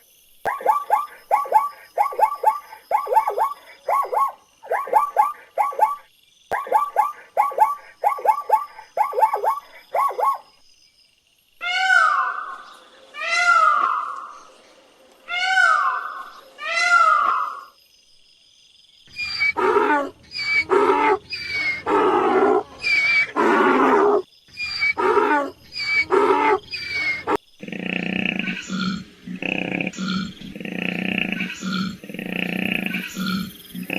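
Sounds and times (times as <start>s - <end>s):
animal cries falling in pitch: 13.2s - 14.3s.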